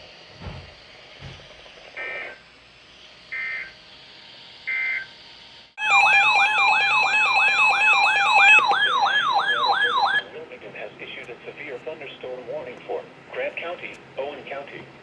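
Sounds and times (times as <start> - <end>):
alert data tone bursts: 5.8 - 10.2
electronic siren alert tone: 5.8 - 10.2.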